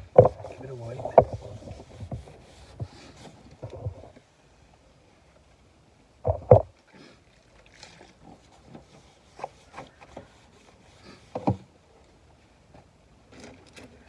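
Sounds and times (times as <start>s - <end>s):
rubbing and knocking: 0.0s - 4.1s, 6.3s - 6.7s, 8.2s - 11.7s
cloth wiping over metal: 0.4s - 3.4s, 8.9s - 11.5s
loud thumps: 6.2s - 6.7s.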